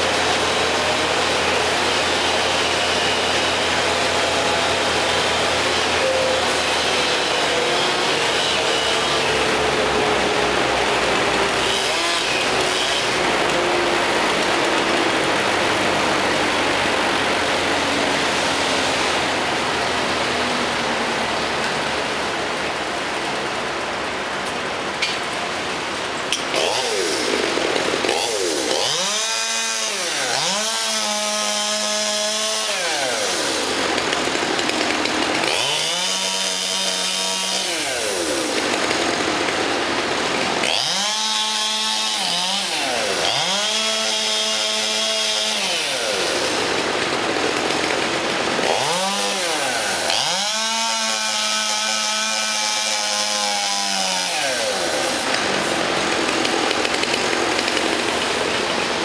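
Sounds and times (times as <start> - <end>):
chainsaw revving: 0.0 - 23.5, 25.7 - 59.0.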